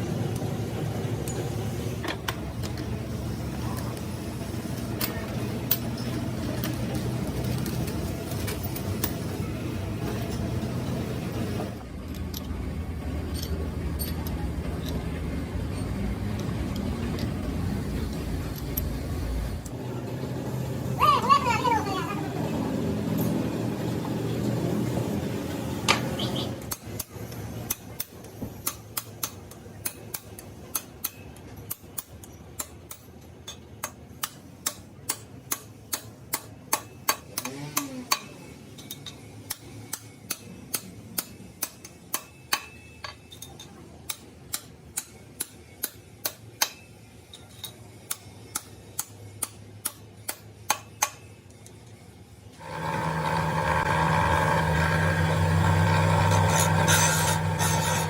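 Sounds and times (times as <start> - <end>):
tool running or grinding: 52.6 - 58.0.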